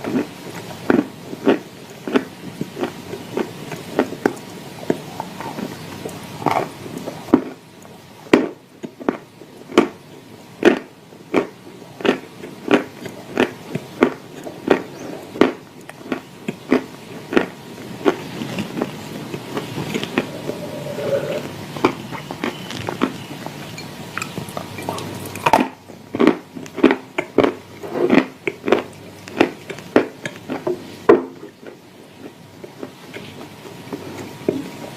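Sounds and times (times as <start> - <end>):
person chewing crunchy clay: 0.0 - 34.7.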